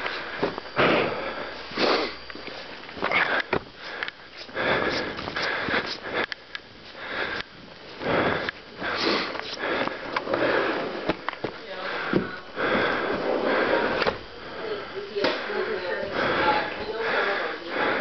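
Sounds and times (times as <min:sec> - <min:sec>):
person sniffing and breathing hard: 0:00.0 - 0:11.1, 0:11.8 - 0:14.8, 0:16.2 - 0:18.0.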